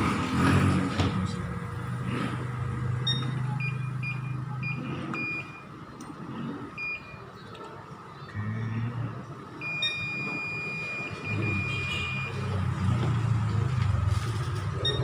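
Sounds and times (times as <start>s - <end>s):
multimeter buzzer beeps: 3.0s - 5.7s, 9.6s - 12.6s.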